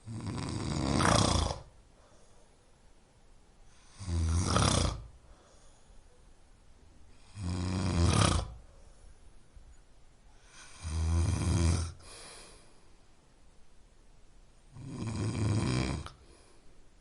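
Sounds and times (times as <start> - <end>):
person snoring: 0.0 - 1.7, 3.7 - 5.2, 7.2 - 8.6, 10.4 - 12.6, 14.7 - 16.5
soft breath: 1.9 - 3.0, 5.1 - 6.4, 8.6 - 9.7, 11.9 - 13.3, 16.1 - 17.0.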